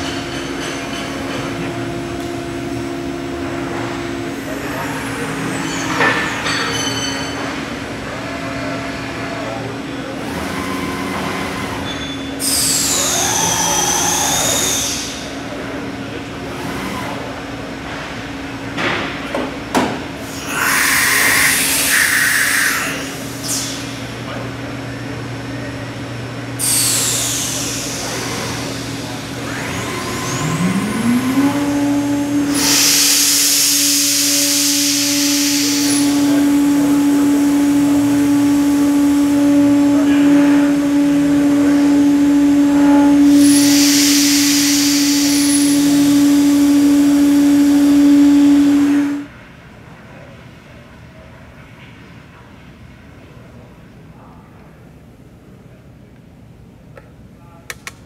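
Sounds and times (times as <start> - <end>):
router spindle tone: 0.0 - 15.4, 26.6 - 49.3
hissing cutting noise: 26.6 - 49.3.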